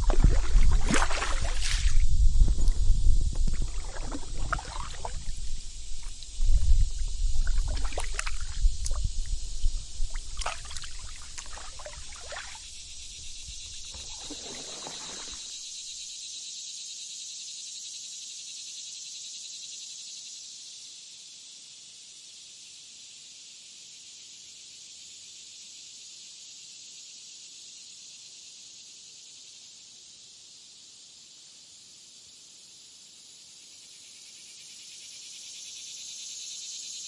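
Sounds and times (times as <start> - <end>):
paddle splashing in water: 0.0 - 15.6
insects droning: 0.0 - 37.0.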